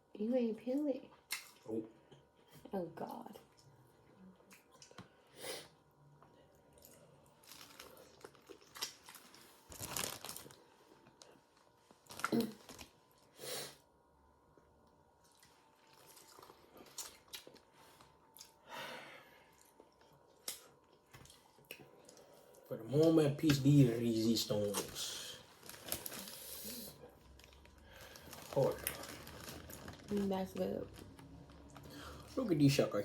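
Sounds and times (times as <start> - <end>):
chewing: 6.7 - 11.3, 15.2 - 18.6
shells crunching and crackling: 7.4 - 10.6, 27.3 - 31.9.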